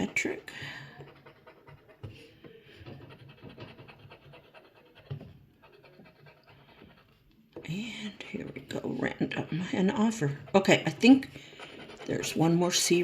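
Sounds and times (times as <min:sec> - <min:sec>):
scratching lottery ticket: 0:08.0 - 0:13.0.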